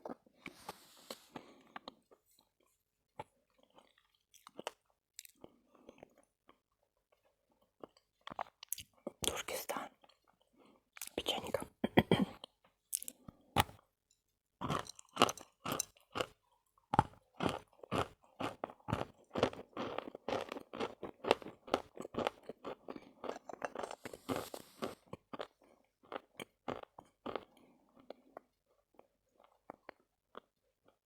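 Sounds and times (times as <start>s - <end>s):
chalk crunching while chewed: 12.4s - 13.8s, 14.6s - 16.4s, 17.0s - 31.0s.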